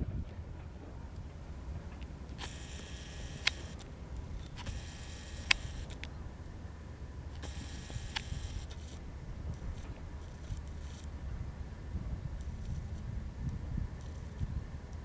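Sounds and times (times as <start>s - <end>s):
wind rumble on microphone: 0.0s - 0.9s, 9.1s - 15.0s
camera lens motor whirring: 0.9s - 11.6s, 12.4s - 15.0s
lens click: 2.0s - 6.2s, 7.3s - 9.8s.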